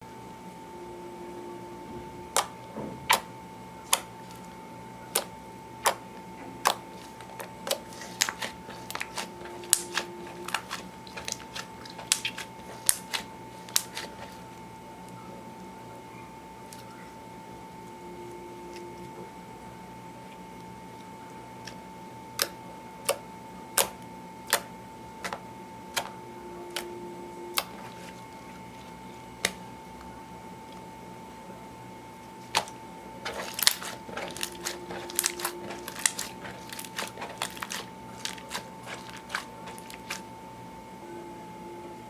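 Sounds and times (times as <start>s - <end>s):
slime clicking and popping: 2.3s - 3.3s, 3.9s - 4.5s, 5.1s - 14.4s, 22.4s - 23.2s, 23.8s - 26.1s, 27.5s - 27.8s, 32.5s - 40.2s.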